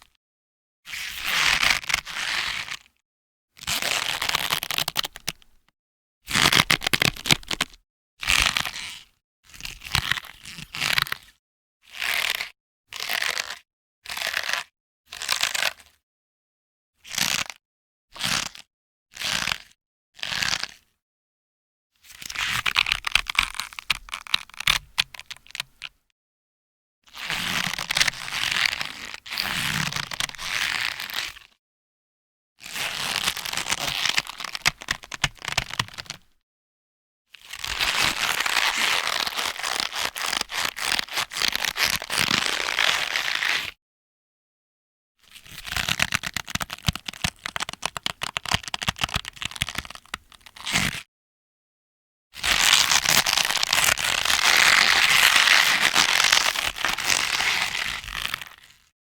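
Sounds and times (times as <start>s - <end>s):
rubbery rope creaking: 22.3s - 26.0s, 32.7s - 36.2s, 37.5s - 43.6s, 45.7s - 51.1s, 52.4s - 58.7s.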